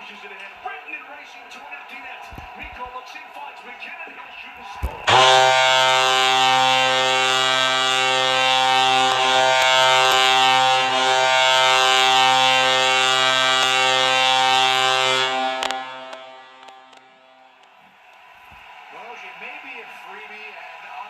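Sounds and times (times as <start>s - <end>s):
goal horn blaring: 4.9s - 17.6s.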